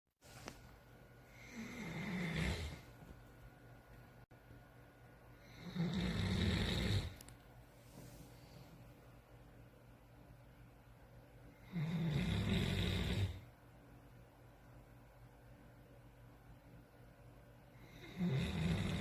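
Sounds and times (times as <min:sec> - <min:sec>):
person snoring: 0:01.3 - 0:02.9, 0:05.4 - 0:07.2, 0:11.6 - 0:13.5, 0:17.8 - 0:19.0.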